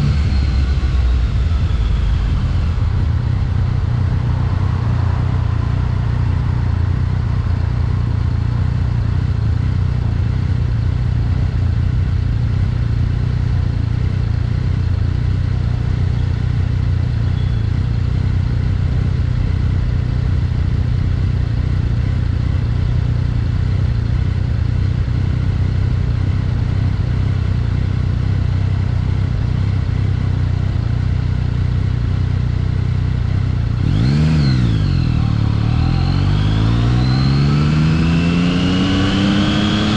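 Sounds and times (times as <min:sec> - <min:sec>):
motorcycle engine running and revving: 0:00.0 - 0:39.9.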